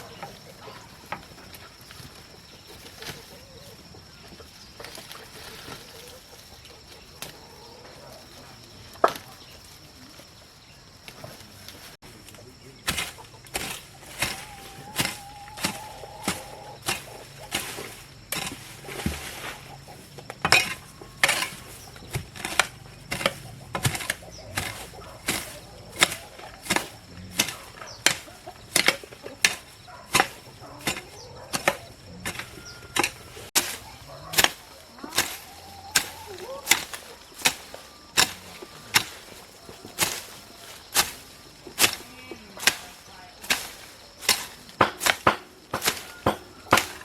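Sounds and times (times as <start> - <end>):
rhythmic chopping with hand tool: 11.9 - 47.0.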